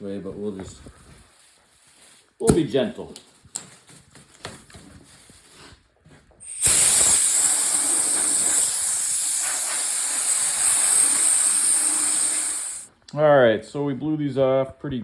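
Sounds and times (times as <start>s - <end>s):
compressed air hissing: 6.4s - 12.9s.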